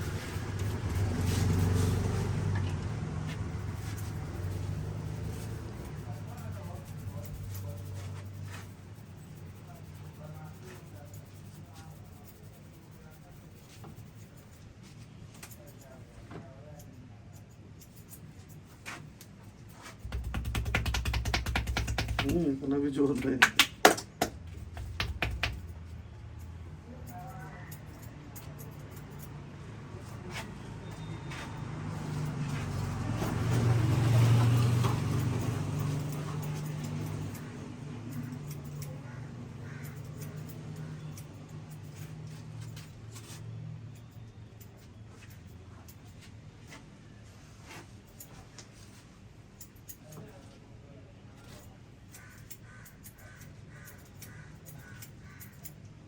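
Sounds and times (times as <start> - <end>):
passing vehicle engine drone: 0.0 - 7.0, 29.4 - 39.6
hands rubbing scalp and hair: 0.0 - 15.8, 18.5 - 26.0.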